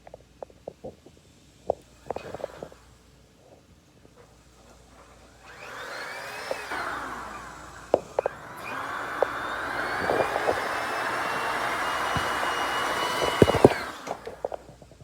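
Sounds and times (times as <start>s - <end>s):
vacuum cleaner motor whining: 1.8s - 2.9s, 4.2s - 15.0s.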